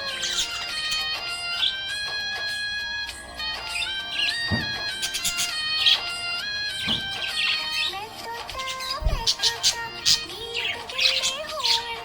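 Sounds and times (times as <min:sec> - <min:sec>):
instrumental children's song: 0:00.0 - 0:12.0.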